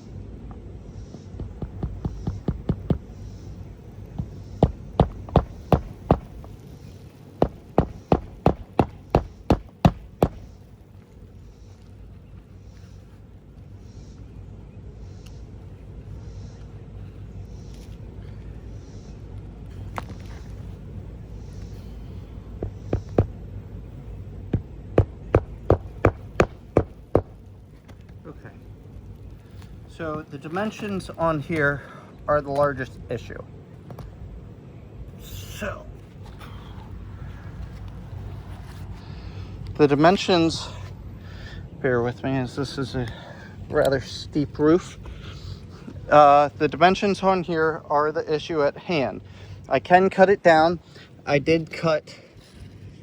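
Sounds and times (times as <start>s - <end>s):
low steady hum: 0.0s - 53.0s
hammer driving nails into shingle: 1.3s - 3.2s, 4.1s - 6.6s, 7.4s - 10.5s, 22.6s - 23.4s, 24.5s - 27.4s.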